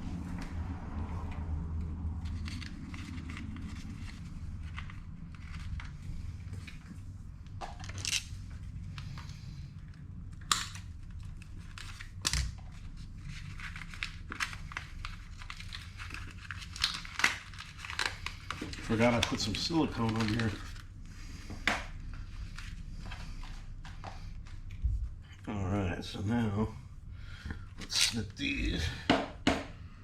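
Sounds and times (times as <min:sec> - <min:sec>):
steady low hum: 0:00.0 - 0:30.0
small clicks and rustling: 0:01.8 - 0:20.9.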